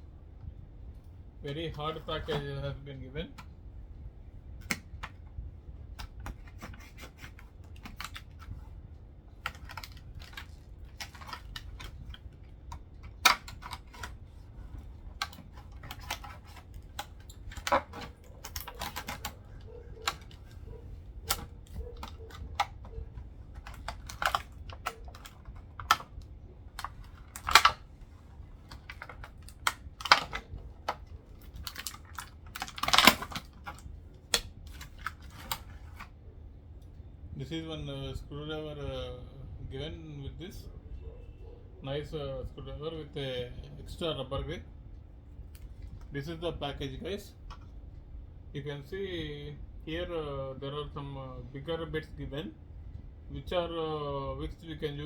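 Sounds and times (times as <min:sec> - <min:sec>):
plastic packaging being pried open: 0:09.4 - 0:20.6, 0:21.2 - 0:27.9, 0:28.5 - 0:36.1.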